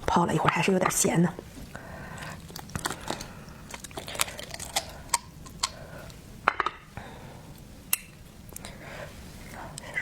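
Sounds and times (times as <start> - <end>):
chewing: 2.2 - 5.8.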